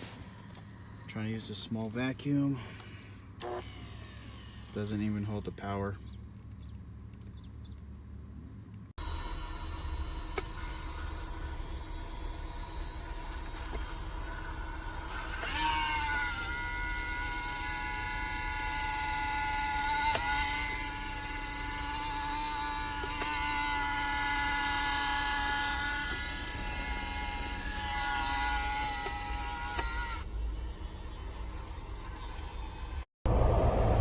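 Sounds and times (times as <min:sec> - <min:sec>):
vacuum cleaner motor whining: 0:02.7 - 0:05.1, 0:09.0 - 0:33.0.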